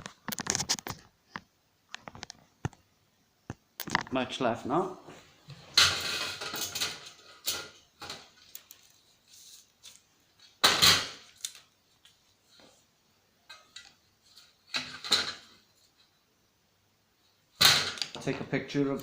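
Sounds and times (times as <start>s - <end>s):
plastic and metal parts clattering: 5.7s - 8.9s, 14.7s - 15.5s.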